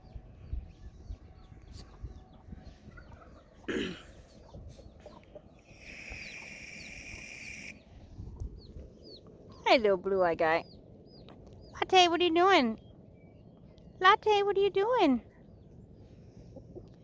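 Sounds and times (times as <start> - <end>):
chicks peeping: 0.0 - 12.0
low wind rumble: 0.0 - 17.0
hen clucking: 1.7 - 11.4.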